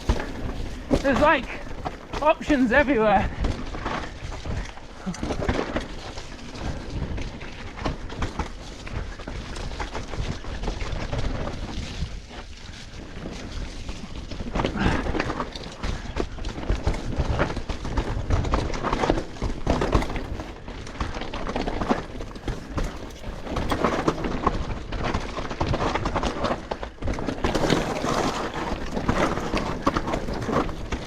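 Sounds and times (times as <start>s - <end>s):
bike chain and frame rattling: 0.0s - 31.0s
bike tyres on dirt and roots: 0.0s - 31.0s.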